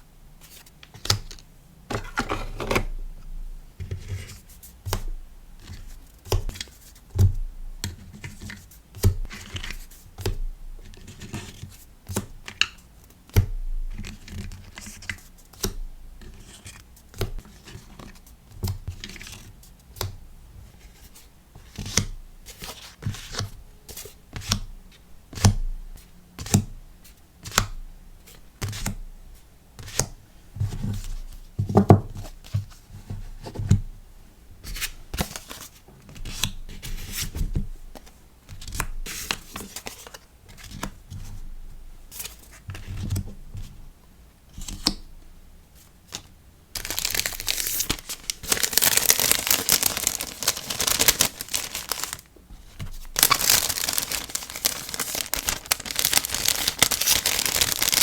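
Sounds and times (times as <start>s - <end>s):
rustles of packing materials: 46.1s - 58.0s.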